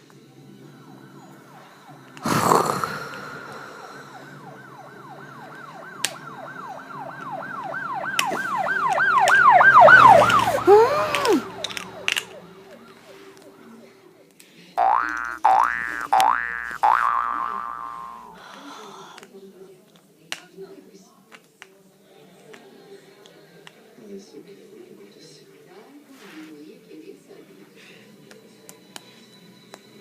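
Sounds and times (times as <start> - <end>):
yelping siren sound effect: 1.5 - 13.6, 14.8 - 18.4.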